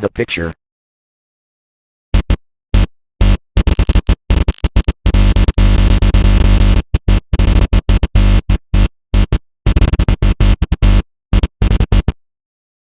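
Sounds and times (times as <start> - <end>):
distorted static glitch: 2.2 - 12.2.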